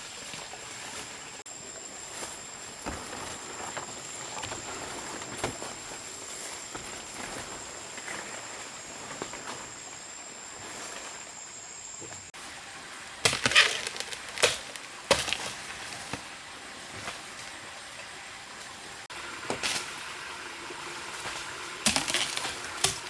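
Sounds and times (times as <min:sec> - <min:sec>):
blade chopping bamboo: 0:13.2 - 0:16.2, 0:21.8 - 0:23.0.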